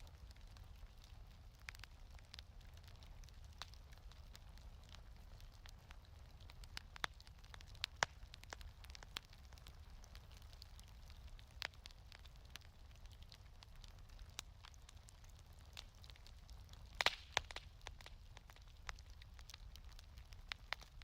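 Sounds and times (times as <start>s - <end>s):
wood fire crackling: 0.0s - 21.0s.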